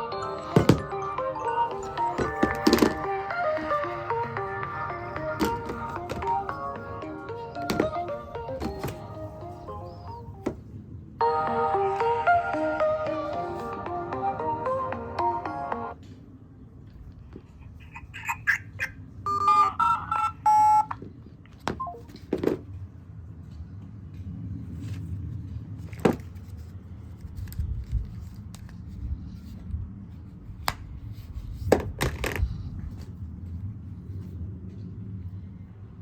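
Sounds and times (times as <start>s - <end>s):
phone electronic beeps: 19.3s - 21.0s, 21.8s - 22.2s.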